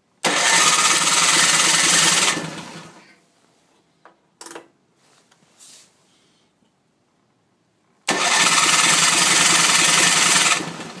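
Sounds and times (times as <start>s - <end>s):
engine cranking with rapid rattle: 0.2s - 3.0s, 8.1s - 11.0s.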